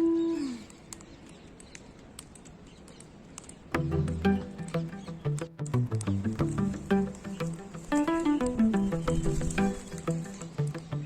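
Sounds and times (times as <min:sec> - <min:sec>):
background music melody: 0:03.8 - 0:11.0.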